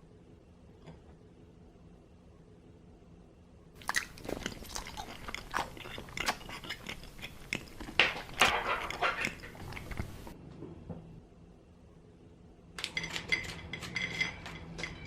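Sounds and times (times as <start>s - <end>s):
close crunching and chewing sounds: 3.8s - 10.4s.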